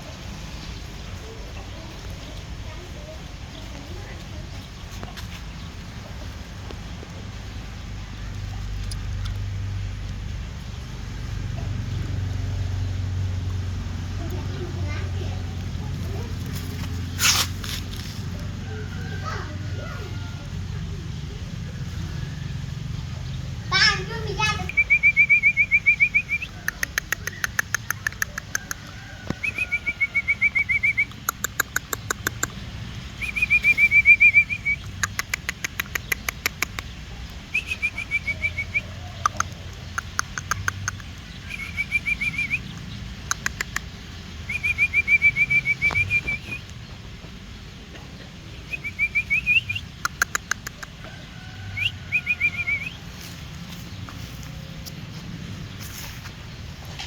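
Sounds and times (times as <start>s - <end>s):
birds trilling: 0.0s - 57.0s
rattling bird clicks: 31.2s - 32.6s.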